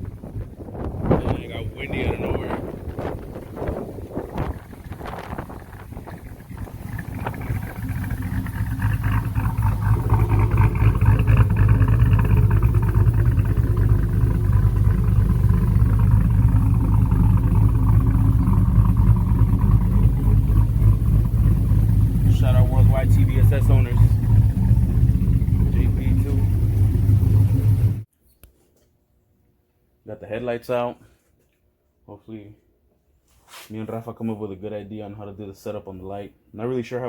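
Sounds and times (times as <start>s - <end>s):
vehicle engine droning: 0.0s - 28.1s.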